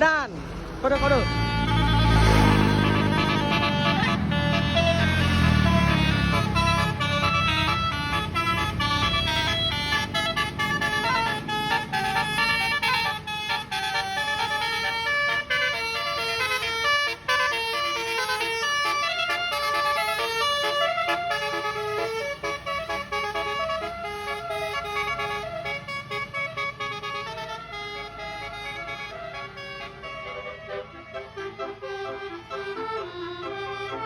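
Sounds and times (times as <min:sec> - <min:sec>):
multi-tone bus horn tune: 0:00.7 - 0:34.0.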